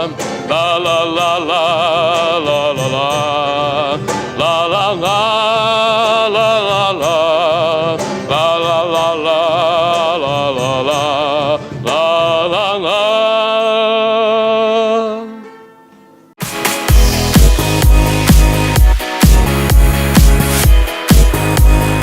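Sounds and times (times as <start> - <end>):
person singing la la la: 0.0 - 15.7
band playing: 15.8 - 22.0
electronic dance music: 16.4 - 22.0.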